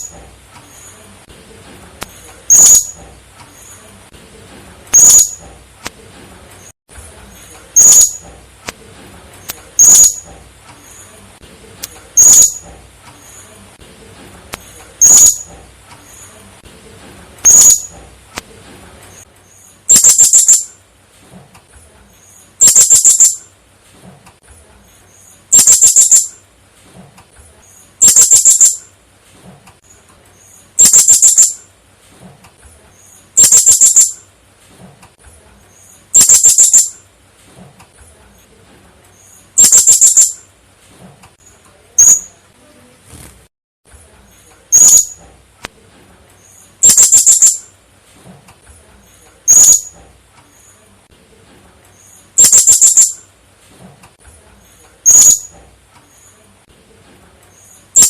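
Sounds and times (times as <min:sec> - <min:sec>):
parrot high-pitched chirps: 0:00.0 - 0:00.9, 0:02.5 - 0:03.0, 0:04.9 - 0:05.4, 0:07.7 - 0:08.3, 0:09.8 - 0:11.1, 0:12.1 - 0:13.4, 0:15.0 - 0:15.5, 0:17.4 - 0:18.0, 0:19.4 - 0:20.8, 0:22.2 - 0:23.5, 0:25.1 - 0:26.4, 0:28.0 - 0:28.9, 0:30.4 - 0:31.7, 0:33.0 - 0:34.3, 0:35.7 - 0:37.0, 0:39.2 - 0:40.5, 0:41.4 - 0:42.4, 0:44.7 - 0:45.2, 0:46.4 - 0:47.7, 0:49.4 - 0:50.0, 0:52.0 - 0:53.3, 0:55.0 - 0:55.6, 0:57.5 - 0:58.0.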